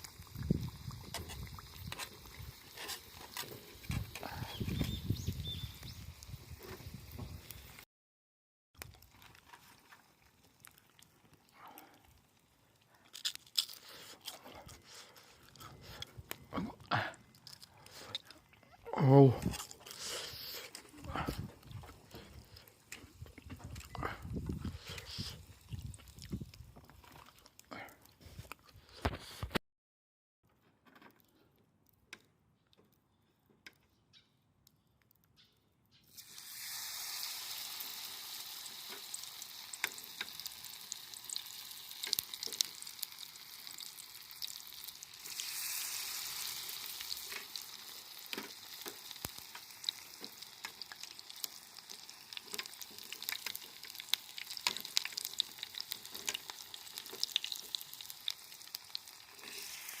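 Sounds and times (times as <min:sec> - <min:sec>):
food sizzling in deep-frying oil: 0:00.0 - 0:07.8, 0:36.1 - 1:00.0
oil popping and crackling: 0:00.0 - 0:07.8, 0:08.8 - 0:29.6, 0:36.1 - 1:00.0.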